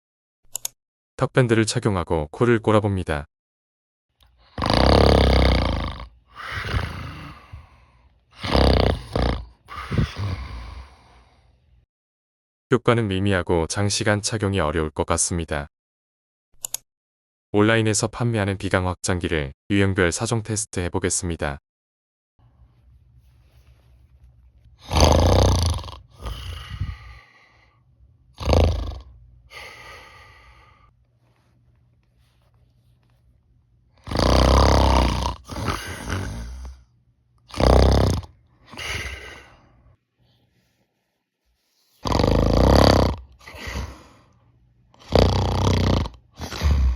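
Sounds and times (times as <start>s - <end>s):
person snoring: 4.4s - 11.4s, 24.8s - 30.9s, 34.0s - 36.8s, 37.5s - 39.7s, 41.9s - 44.4s, 45.0s - 46.9s
soft breath: 6.3s - 8.2s, 9.7s - 11.6s, 22.4s - 24.7s, 26.2s - 27.9s, 29.5s - 33.2s, 38.7s - 42.0s.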